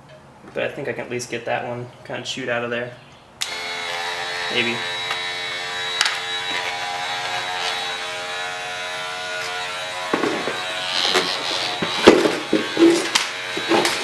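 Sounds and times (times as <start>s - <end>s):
oscillating saw buzzing: 3.4s - 14.0s
saw blade rasping and knocking: 9.4s - 14.0s.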